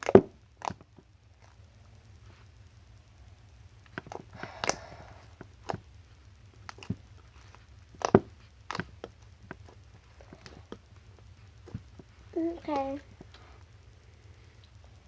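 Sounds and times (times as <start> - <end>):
slime snapping: 0.0 - 0.9, 3.9 - 4.9, 6.6 - 9.8
sticky slime clicks and squelches: 0.0 - 1.6, 3.8 - 5.9, 6.5 - 10.8
slime rustle: 0.0 - 15.0.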